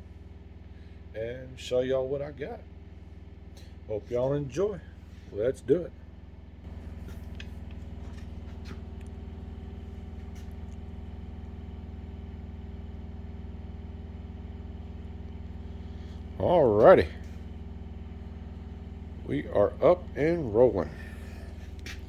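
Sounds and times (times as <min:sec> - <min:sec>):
low machine hum: 0:00.0 - 0:22.0
faint clicks and taps: 0:06.7 - 0:09.2.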